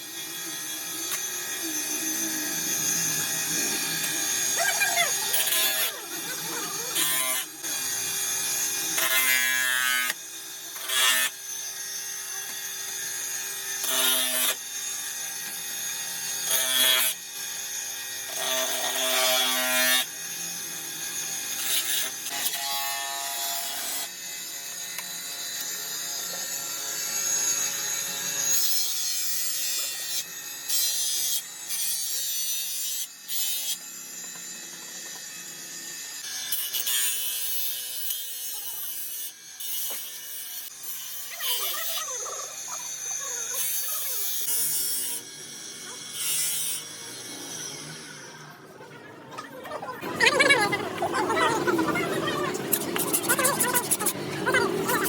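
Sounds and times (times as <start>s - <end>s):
hand tools scraping plastic: 52.5s - 55.0s.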